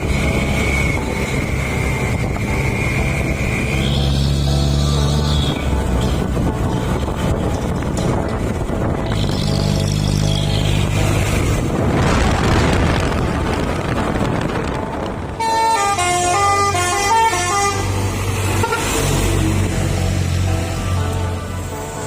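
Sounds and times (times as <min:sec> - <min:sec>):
truck engine humming: 0:00.0 - 0:22.0
truck horn playing melody: 0:15.3 - 0:22.0.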